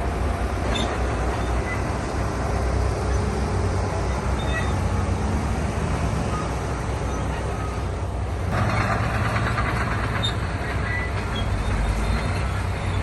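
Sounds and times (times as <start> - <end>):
earthmoving machinery engine drone: 0.0 - 13.0
clattering of rock or steel: 8.5 - 11.3.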